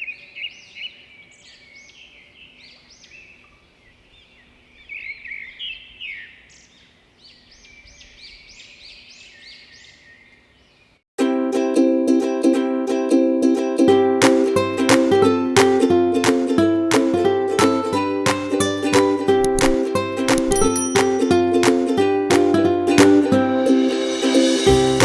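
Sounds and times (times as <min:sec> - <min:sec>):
plucked-string music: 0:11.2 - 0:25.0.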